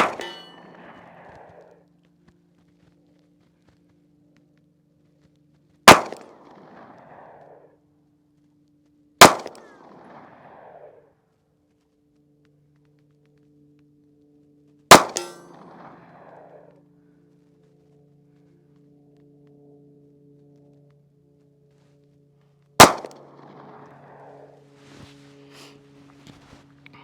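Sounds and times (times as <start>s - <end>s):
rifle shots ringing: 0.0s - 1.6s, 5.9s - 7.4s, 9.2s - 10.9s, 14.9s - 16.6s, 22.8s - 24.5s.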